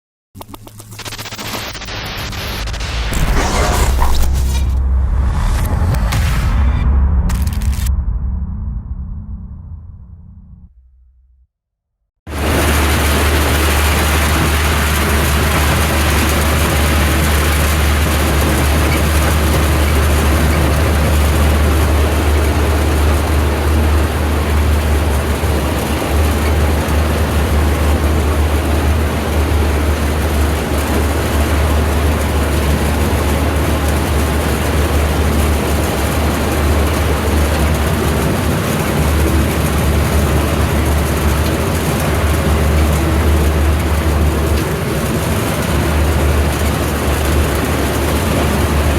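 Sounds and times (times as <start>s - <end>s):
tractor engine running: 12.3s - 48.9s.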